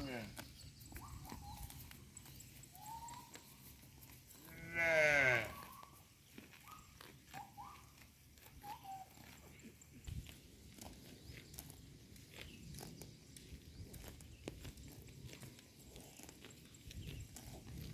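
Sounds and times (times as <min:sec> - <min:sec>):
bird chirps: 0:00.0 - 0:03.9, 0:05.5 - 0:10.1
grass being cropped: 0:00.0 - 0:17.9
animal bleating: 0:04.4 - 0:05.8.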